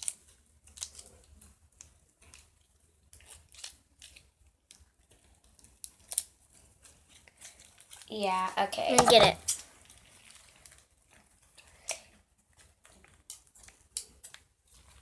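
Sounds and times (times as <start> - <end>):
slime squelching: 0.0 - 15.0
rubber crackling: 8.1 - 10.6.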